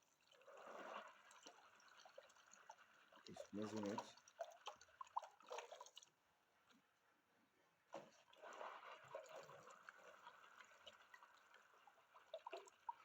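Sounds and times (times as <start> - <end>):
plaster mix sloshing while stirred: 8.0 - 13.0.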